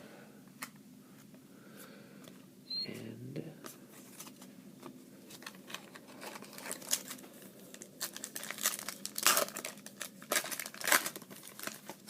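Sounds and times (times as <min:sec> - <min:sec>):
foil wrapper tearing and crinkling: 0:05.4 - 0:12.0.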